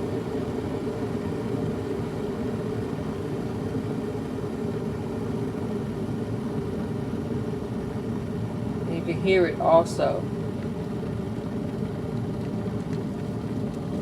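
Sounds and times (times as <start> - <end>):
water rumbling in electric kettle: 0.0 - 14.0.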